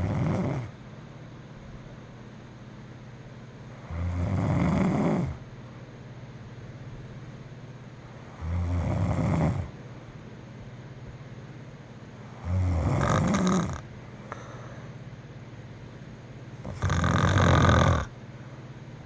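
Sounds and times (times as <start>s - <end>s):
woman snoring: 0.0s - 0.7s, 3.8s - 5.4s, 8.4s - 9.7s, 12.4s - 14.6s, 16.6s - 18.1s.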